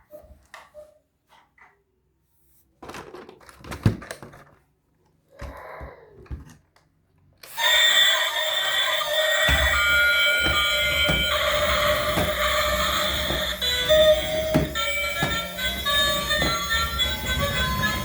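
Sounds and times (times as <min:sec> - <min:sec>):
plastic toys knocking: 0:09.5 - 0:18.0.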